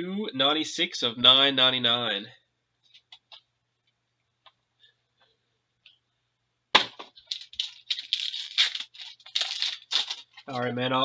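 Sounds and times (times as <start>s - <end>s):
card pack wrapper crinkling: 7.2s - 10.6s.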